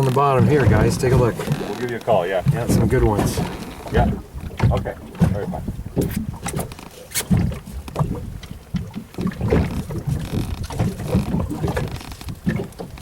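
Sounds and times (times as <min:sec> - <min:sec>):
small knocks: 0:00.0 - 0:13.0
wind buffeting microphone: 0:00.0 - 0:13.0.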